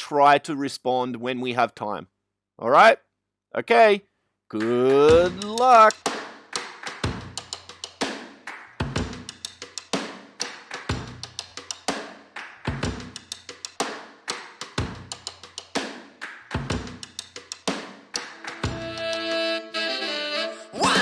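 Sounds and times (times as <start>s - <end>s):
steady drum beat: 4.6s - 19.4s.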